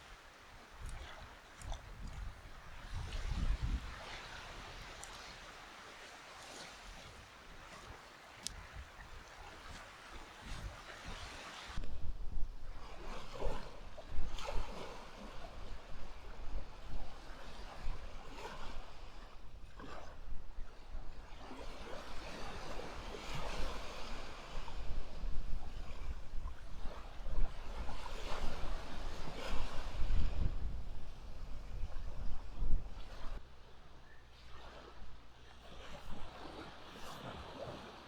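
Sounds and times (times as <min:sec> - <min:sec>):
waves breaking on shore: 0:00.0 - 0:11.8, 0:20.8 - 0:33.4, 0:34.3 - 0:38.0
wind rumbling on microphone: 0:00.0 - 0:38.0.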